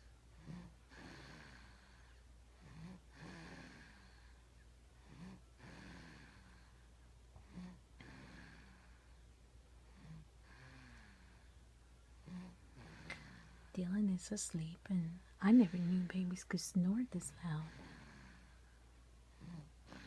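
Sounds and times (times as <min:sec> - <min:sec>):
baby snoring: 0:00.3 - 0:04.4, 0:05.0 - 0:06.8, 0:07.4 - 0:09.1, 0:09.9 - 0:11.6, 0:12.2 - 0:14.2, 0:17.1 - 0:18.7, 0:19.3 - 0:20.0.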